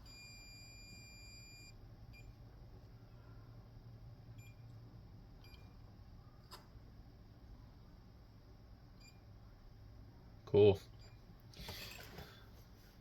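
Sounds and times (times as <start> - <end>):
faint electronic beeps: 0.0 - 2.4, 4.4 - 4.8, 5.4 - 6.4.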